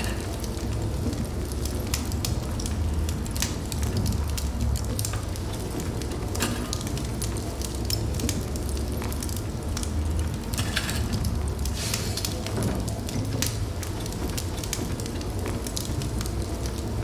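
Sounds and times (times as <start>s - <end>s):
fire crackling and popping: 0.0s - 17.0s
low rumble of flames: 0.0s - 17.0s.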